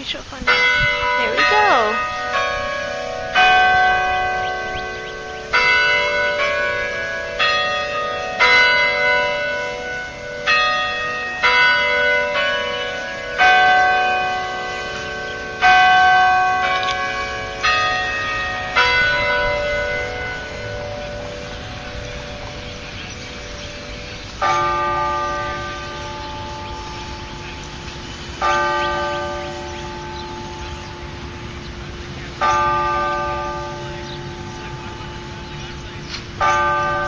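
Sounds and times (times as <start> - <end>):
tower bells chiming a tune: 0.4 - 37.0.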